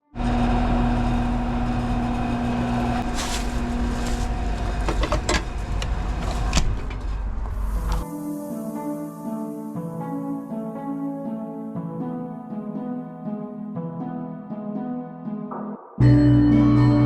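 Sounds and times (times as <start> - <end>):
machine hum: 0.1 - 8.0.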